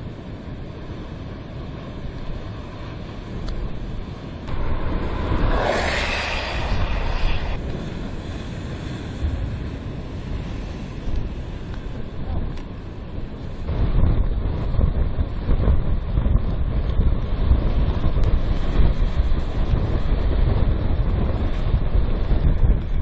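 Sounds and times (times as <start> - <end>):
wind rumbling on microphone: 0.0 - 23.0
vehicle noise: 1.8 - 14.6.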